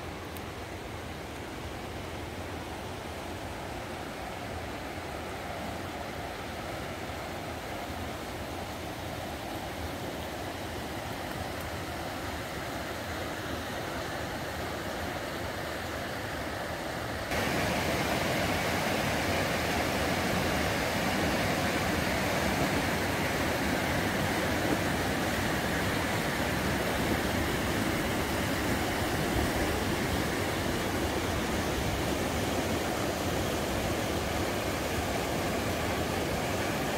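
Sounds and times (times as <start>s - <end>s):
river rapids rushing: 1.9s - 36.9s.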